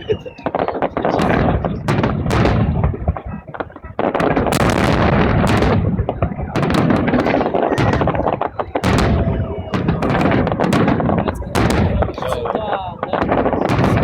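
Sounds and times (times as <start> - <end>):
fireworks bangs and crackles: 0.0 - 14.0
rumbling echo: 0.0 - 14.0.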